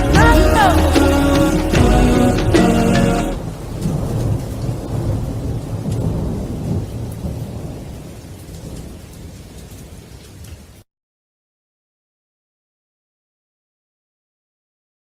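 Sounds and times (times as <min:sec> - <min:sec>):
thunder rumbling: 0:00.0 - 0:10.0
steady rain: 0:00.0 - 0:10.9.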